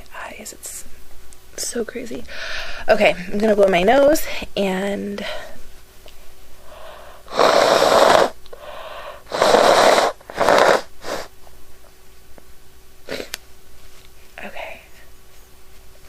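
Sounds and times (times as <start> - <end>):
woman blowing her nose: 7.2 - 8.4, 9.0 - 11.4, 13.1 - 13.4.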